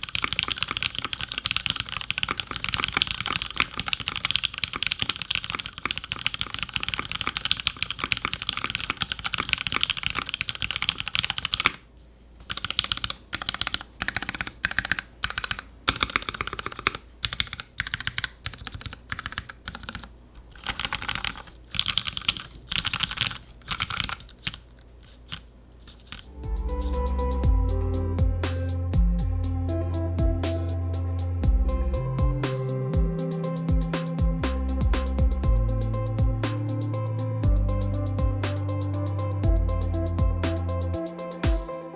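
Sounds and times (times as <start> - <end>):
mechanical keyboard typing: 0.0 - 11.8, 12.5 - 24.7.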